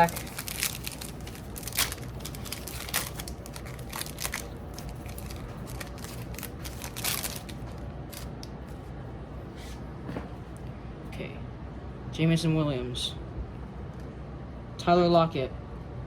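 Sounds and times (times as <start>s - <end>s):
wrapper crinkling and tearing: 0.0s - 8.3s.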